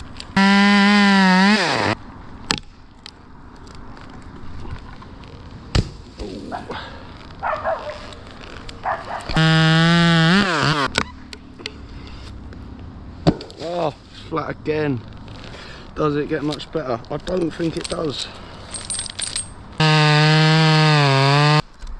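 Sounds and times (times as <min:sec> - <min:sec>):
chainsaw revving and idling: 0:00.4 - 0:02.0, 0:09.4 - 0:10.9, 0:19.8 - 0:21.6
rustling: 0:07.0 - 0:09.4.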